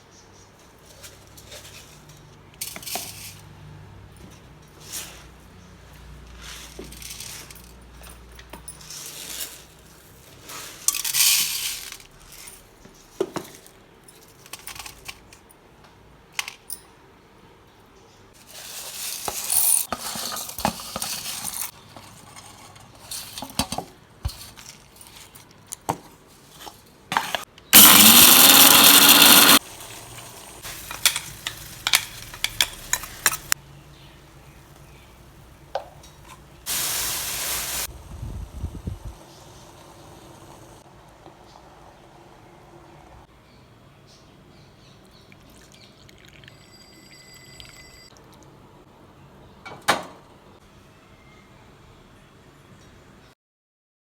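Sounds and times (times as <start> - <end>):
kitchen utensils clinking: 26.6 - 33.6.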